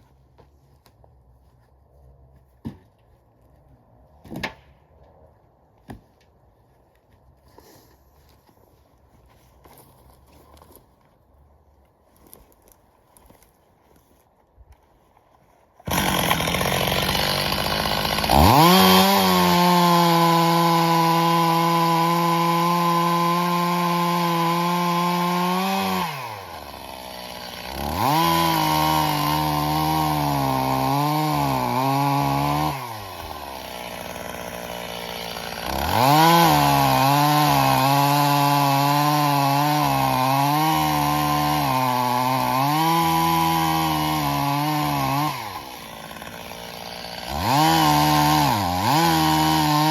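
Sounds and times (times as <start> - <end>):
chainsaw cutting logs: 15.8 - 49.9.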